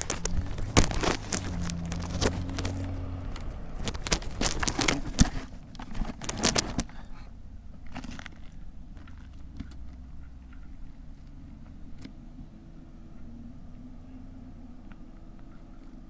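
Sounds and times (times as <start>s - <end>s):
sharp clicks and metallic rattling: 0.0s - 7.0s.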